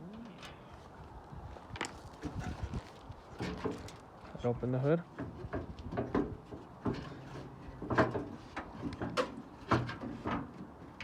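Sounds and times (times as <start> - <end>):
clunks and knocks of tools: 3.4 - 4.0, 5.2 - 11.0.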